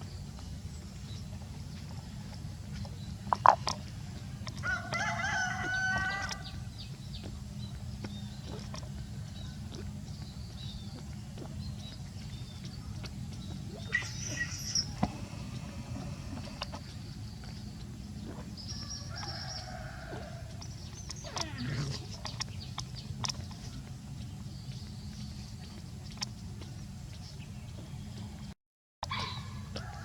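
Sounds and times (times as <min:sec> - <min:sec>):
low hum: 0:00.0 - 0:28.5
held animal call: 0:13.7 - 0:16.8.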